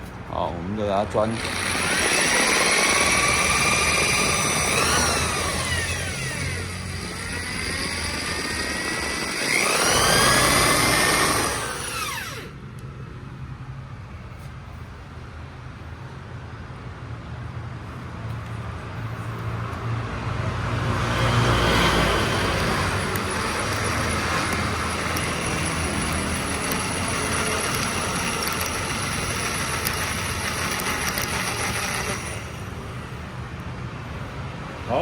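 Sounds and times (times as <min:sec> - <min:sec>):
electric drill drilling: 0:01.2 - 0:12.6, 0:21.8 - 0:32.8.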